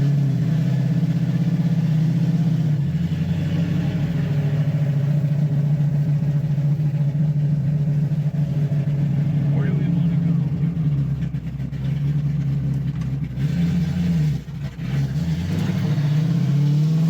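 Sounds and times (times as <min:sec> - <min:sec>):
car engine running: 0:00.0 - 0:17.0.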